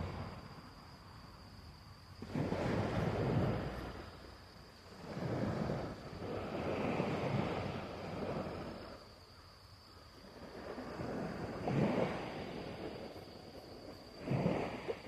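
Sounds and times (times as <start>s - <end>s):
wind buffeting microphone: 2.2s - 4.0s, 10.3s - 15.0s
sea waves: 2.2s - 9.2s, 10.1s - 15.0s.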